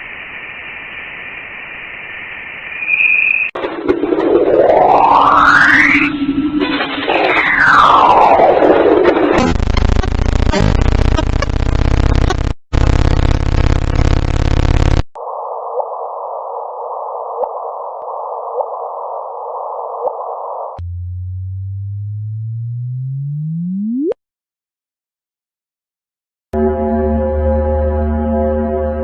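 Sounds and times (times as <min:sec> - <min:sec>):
low hum: 0:00.0 - 0:24.2
buzzing electronic drone: 0:03.6 - 0:15.1
rising chirp tone: 0:04.2 - 0:06.6, 0:20.8 - 0:24.2.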